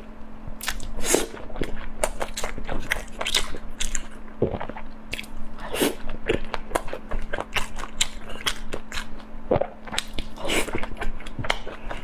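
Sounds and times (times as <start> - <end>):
person chewing and biting food: 0.6 - 12.0.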